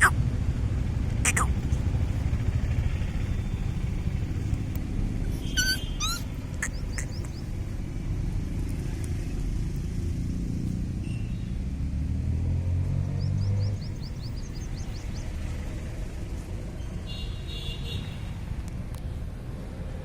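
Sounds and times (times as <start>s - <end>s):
low outdoor rumble: 0.0s - 10.8s
high-pitched chirps: 5.5s - 7.4s.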